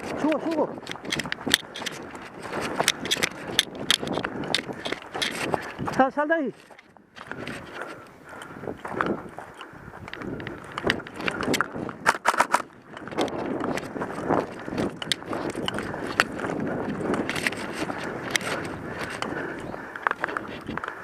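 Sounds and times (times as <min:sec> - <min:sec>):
sharp clicks: 0:00.0 - 0:13.9
footsteps on rough ground: 0:00.0 - 0:21.0
gear and clothing rustling: 0:00.0 - 0:21.0.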